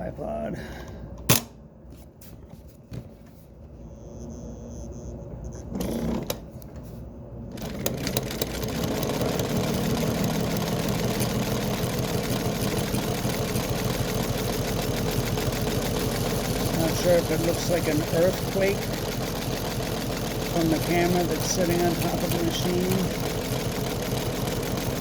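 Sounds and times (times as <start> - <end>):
sewing machine stitching: 7.5 - 25.0.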